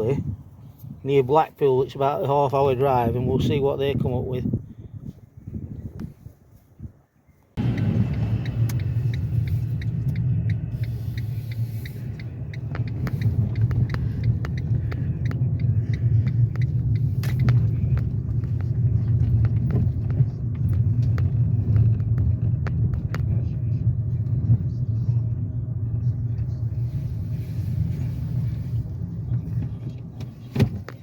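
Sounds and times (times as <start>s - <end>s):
car engine and road noise: 0.0s - 31.0s
regular ticking: 7.6s - 23.0s.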